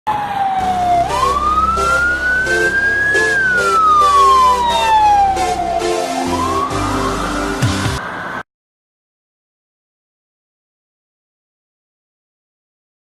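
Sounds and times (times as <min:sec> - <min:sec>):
fire truck siren wailing: 0:00.1 - 0:08.4
music with steady beat: 0:01.0 - 0:08.0.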